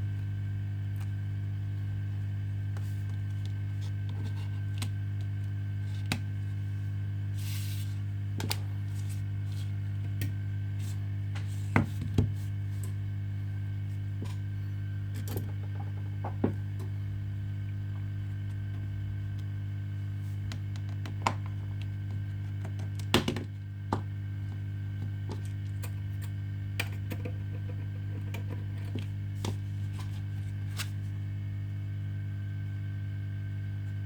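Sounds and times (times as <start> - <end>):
low electrical hum: 0.0 - 34.0.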